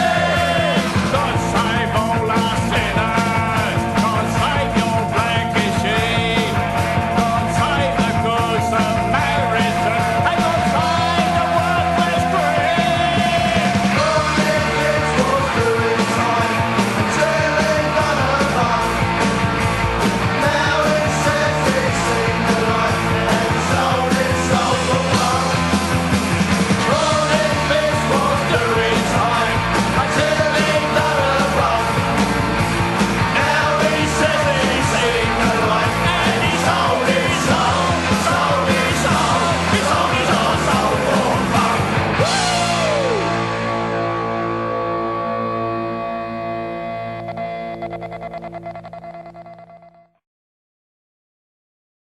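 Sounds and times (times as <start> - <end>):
person singing and shouting: 0.0 - 19.0, 20.4 - 25.7, 26.8 - 32.2, 33.2 - 43.6
punk rock band playing: 0.0 - 49.5.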